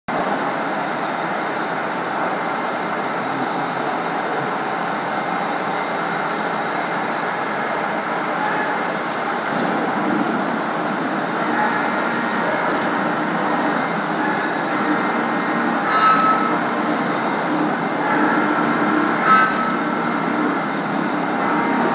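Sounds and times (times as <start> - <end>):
high machining tone: 0.2 - 21.9
milling machine cutting noise: 0.3 - 21.9.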